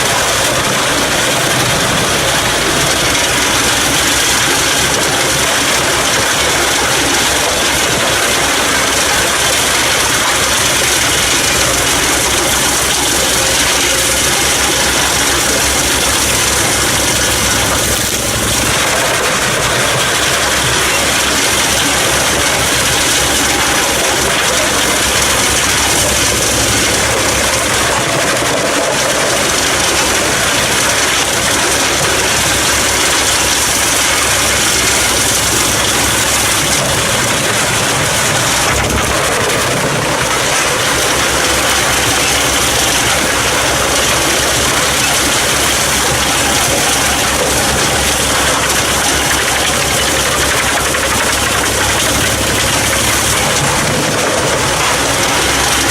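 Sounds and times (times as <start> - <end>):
tractor engine: 0.0 - 55.9
wood chipper drum spinning: 0.0 - 55.9.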